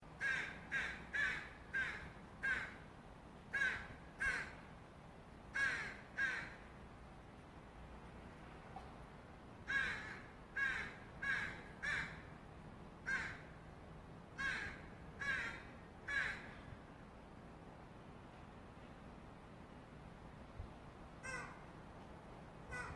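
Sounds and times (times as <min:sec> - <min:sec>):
young crow begging calls: 0:00.2 - 0:02.8, 0:03.5 - 0:04.6, 0:05.5 - 0:06.7, 0:09.7 - 0:12.3, 0:13.1 - 0:13.5, 0:14.4 - 0:16.5, 0:21.2 - 0:21.7, 0:22.7 - 0:22.9.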